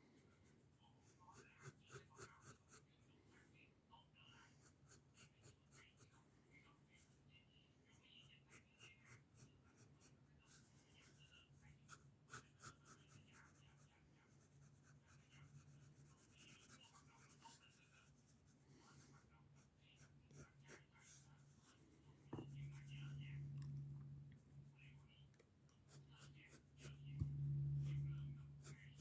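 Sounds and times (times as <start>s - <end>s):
pencil scratching on paper: 0.2s - 3.1s, 4.6s - 6.2s, 7.9s - 23.4s, 24.3s - 29.0s
steady low hum: 19.4s - 29.0s.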